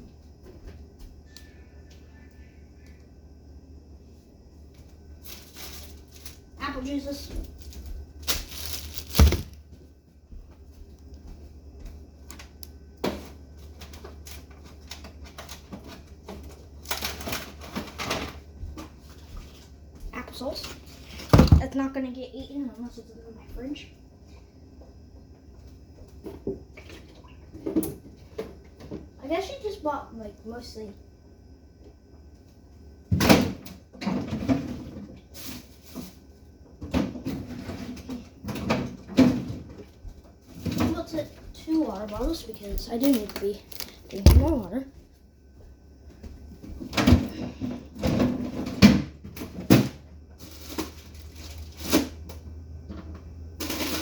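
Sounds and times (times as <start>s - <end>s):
rustling and clatter: 5.2s - 6.5s, 7.2s - 9.9s, 46.5s - 52.2s
packages being handled: 7.1s - 9.7s, 42.0s - 44.8s
rustling: 7.4s - 9.6s, 42.4s - 44.7s
kitchen items clunking: 42.0s - 44.9s.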